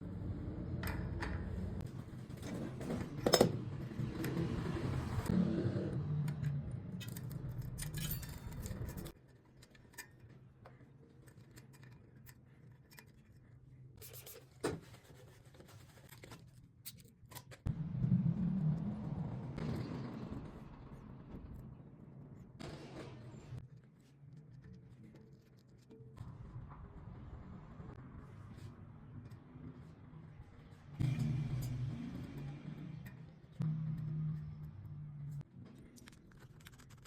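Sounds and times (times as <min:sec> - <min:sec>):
metal tools clicking and scraping: 0:02.4 - 0:04.4, 0:06.2 - 0:10.4, 0:11.1 - 0:13.4.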